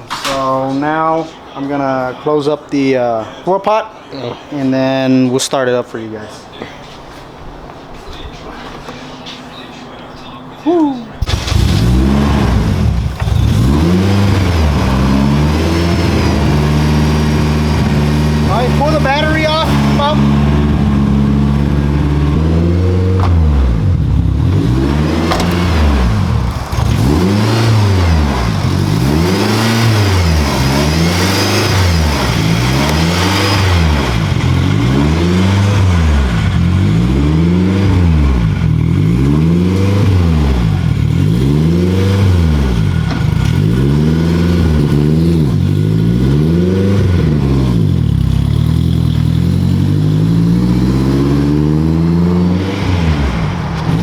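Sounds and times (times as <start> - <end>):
car engine idling and revving: 11.2 - 54.0.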